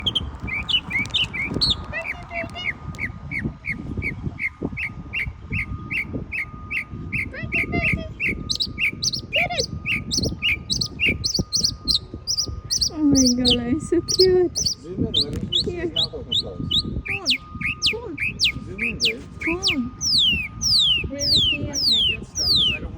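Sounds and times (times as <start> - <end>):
low background rumble: 0.0 - 22.9
songbird chirping: 0.0 - 22.9.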